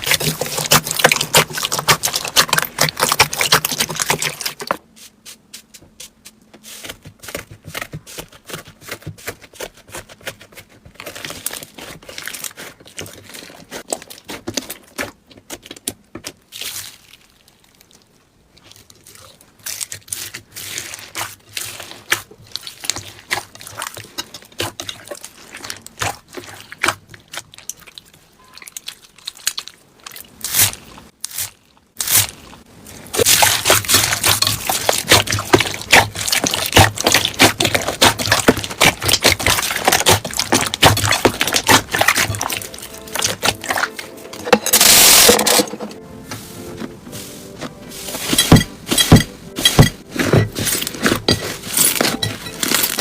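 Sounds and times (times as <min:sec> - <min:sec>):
slime crackling and popping: 0:00.0 - 0:04.8, 0:11.0 - 0:44.1.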